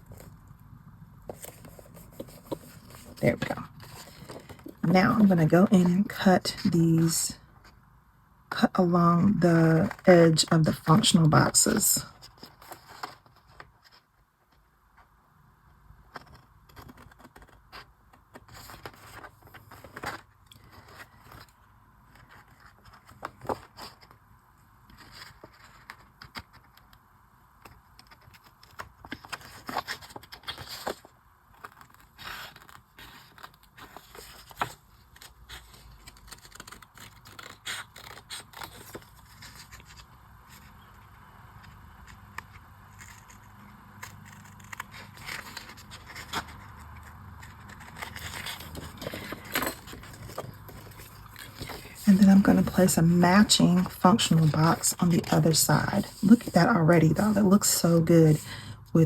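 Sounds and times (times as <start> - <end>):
paper scraping and rustling: 1.3 - 7.8, 9.8 - 15.1, 16.1 - 24.2, 24.9 - 26.8, 27.6 - 58.7
scissors cutting paper: 31.6 - 39.9, 42.0 - 58.6.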